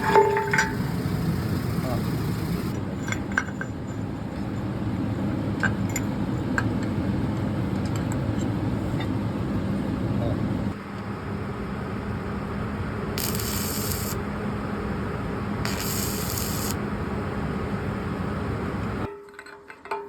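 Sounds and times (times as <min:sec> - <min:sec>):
bursts of high hiss: 0:00.0 - 0:02.8, 0:13.2 - 0:14.2, 0:15.7 - 0:16.8
steady hissing: 0:00.0 - 0:02.8, 0:13.2 - 0:14.2, 0:15.7 - 0:16.8.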